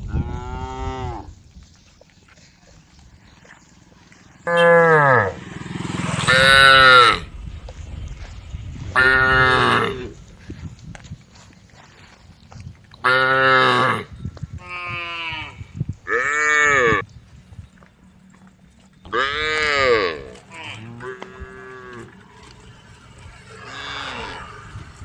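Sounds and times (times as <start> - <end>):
cows mooing: 0.1 - 1.3, 4.4 - 5.4, 6.2 - 7.3, 8.9 - 10.2, 13.0 - 17.0, 19.0 - 25.0.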